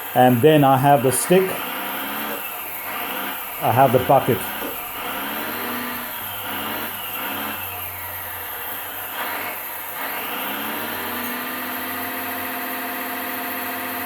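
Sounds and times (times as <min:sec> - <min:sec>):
simulated engine sound: 0:00.0 - 0:09.8
hydraulic pump whining: 0:00.0 - 0:14.0.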